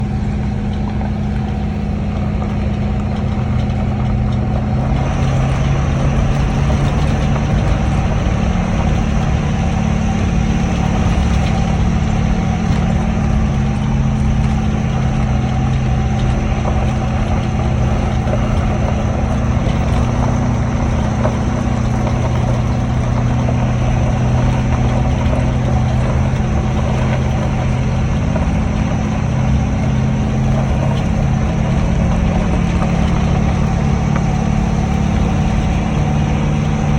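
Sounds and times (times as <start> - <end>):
diesel engine running: 0.0 - 36.9.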